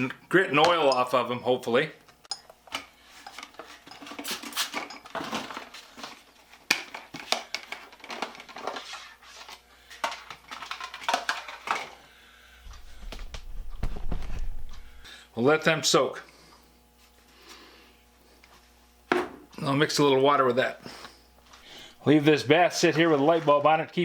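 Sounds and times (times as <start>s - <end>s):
low hum: 12.6s - 15.2s.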